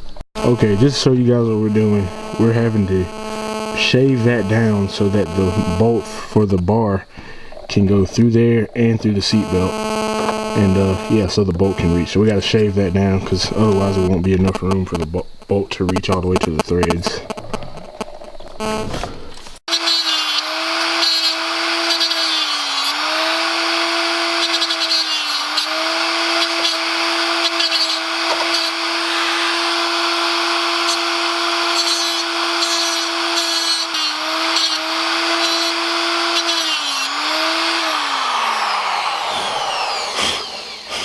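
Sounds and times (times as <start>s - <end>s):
high-speed power tool motor: 0.4s - 6.4s, 9.4s - 12.0s, 19.7s - 41.0s.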